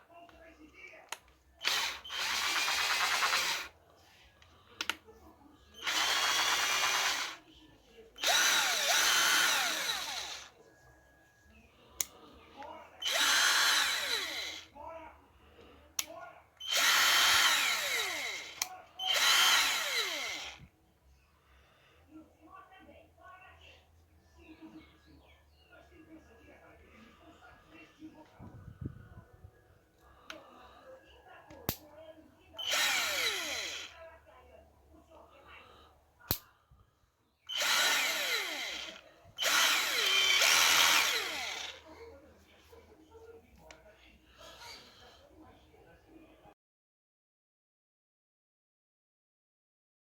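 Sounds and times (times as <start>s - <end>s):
cordless drill motor whine: 1.6s - 3.7s, 5.8s - 7.4s, 8.2s - 10.5s, 13.0s - 14.7s, 16.6s - 20.7s, 32.6s - 33.9s, 37.5s - 41.9s
drill trigger click: 1.6s - 3.7s, 5.8s - 7.4s, 8.2s - 10.5s, 13.0s - 14.6s, 16.6s - 20.6s, 32.6s - 33.9s, 37.5s - 41.8s.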